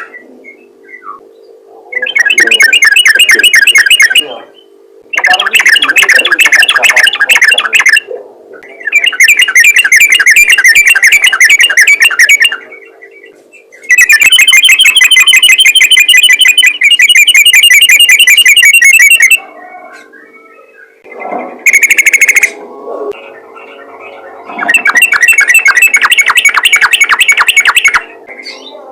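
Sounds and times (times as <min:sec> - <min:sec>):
bird singing rapid trill: 0:00.0 - 0:28.9.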